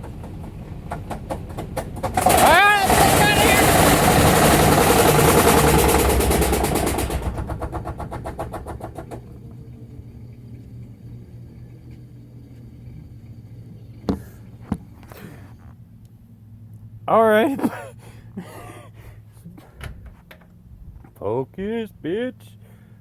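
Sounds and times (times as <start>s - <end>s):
washing machine spinning: 0.0s - 17.8s
low hum: 0.0s - 23.0s.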